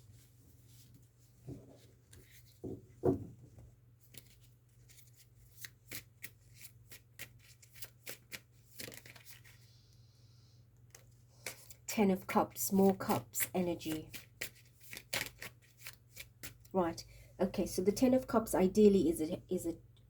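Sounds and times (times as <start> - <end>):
cards being shuffled: 4.1 - 9.6, 10.9 - 11.8, 12.8 - 16.7.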